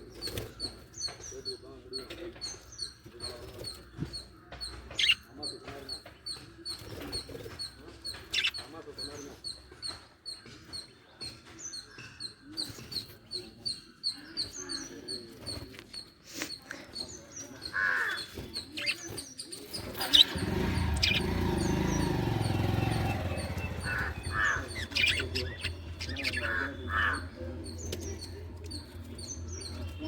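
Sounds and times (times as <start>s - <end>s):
birds chirping: 0.0s - 30.0s
bird squawk: 17.7s - 19.1s, 19.9s - 30.0s.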